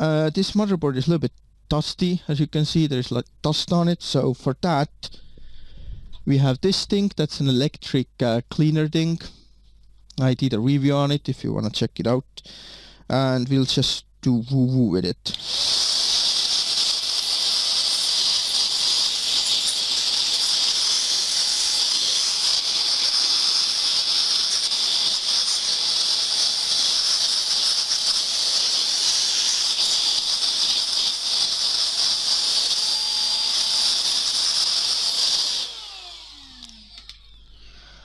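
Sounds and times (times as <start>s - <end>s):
electric dust blower hissing: 15.3s - 38.0s.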